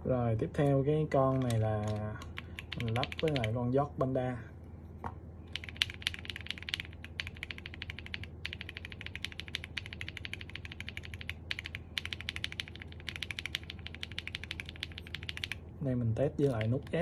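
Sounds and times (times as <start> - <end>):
mechanical keyboard typing: 1.3 - 3.6, 5.5 - 15.6, 16.4 - 17.0.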